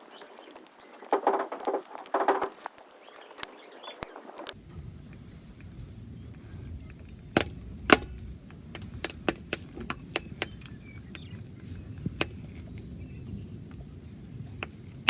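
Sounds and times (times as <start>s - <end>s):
steady low rumble: 4.5s - 15.0s.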